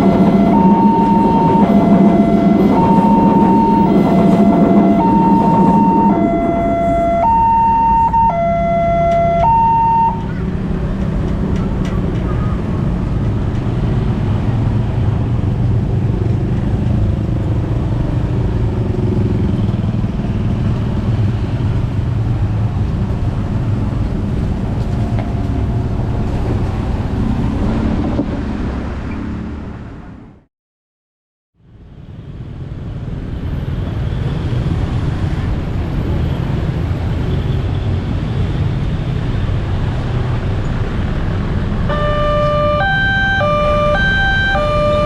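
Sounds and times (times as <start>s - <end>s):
level crossing two-tone alarm: 0.0s - 10.4s, 41.9s - 45.0s.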